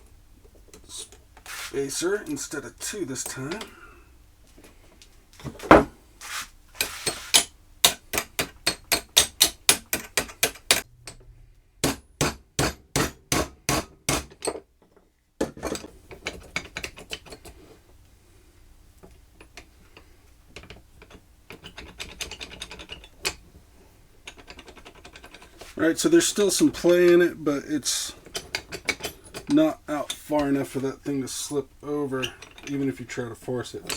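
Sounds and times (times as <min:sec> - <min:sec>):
vise parts scraping and clicking: 0:04.5 - 0:11.3, 0:19.0 - 0:33.9
hammer tapping on metal: 0:11.8 - 0:14.3.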